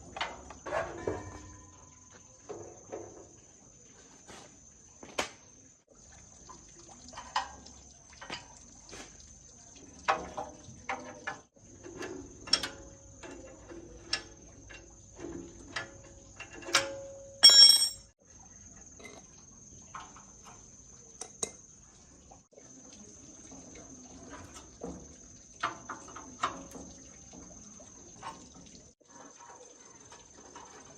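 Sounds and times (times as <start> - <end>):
metal tools clinking and knocking: 11.8 - 18.2
ringing metallic clang: 16.7 - 18.1.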